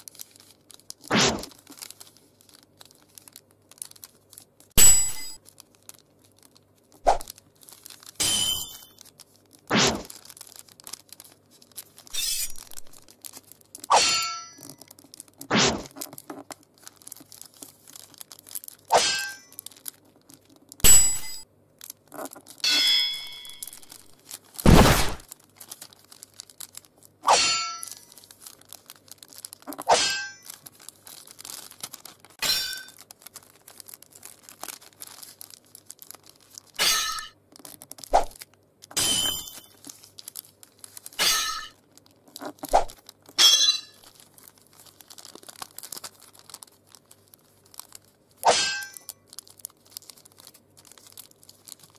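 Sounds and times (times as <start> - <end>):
metallic sword clangs: 4.8 - 5.4, 13.9 - 14.5, 27.3 - 27.9.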